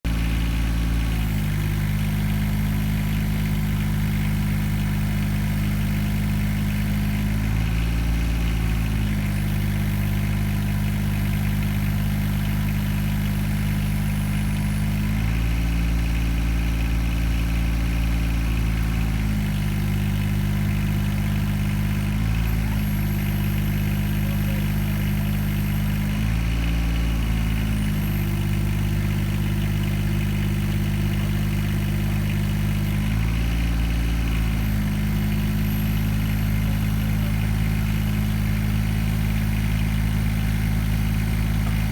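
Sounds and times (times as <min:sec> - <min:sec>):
engine running and revving: 0:00.0 - 0:41.9.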